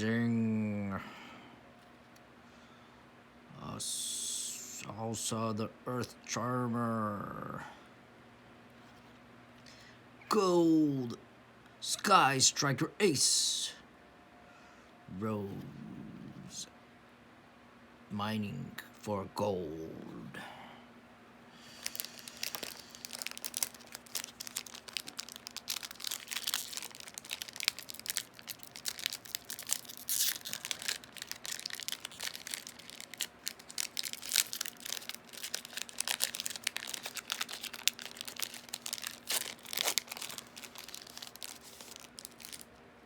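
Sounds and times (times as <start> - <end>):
foil wrapper crinkling and tearing: 21.6 - 42.7.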